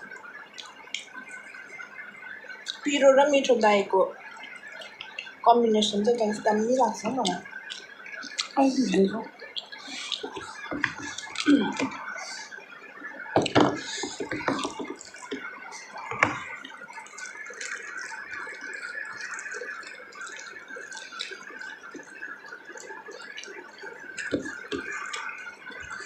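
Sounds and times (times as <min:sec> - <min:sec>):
wet chewing: 0:00.0 - 0:26.0.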